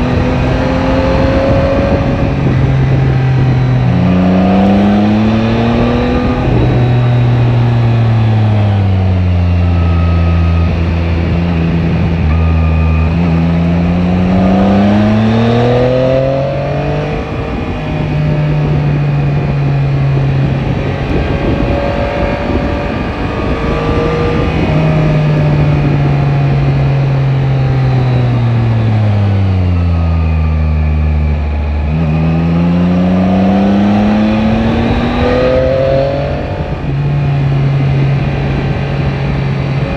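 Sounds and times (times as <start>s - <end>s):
motorcycle engine under load: 0.0s - 39.9s
wind rushing: 10.6s - 29.1s.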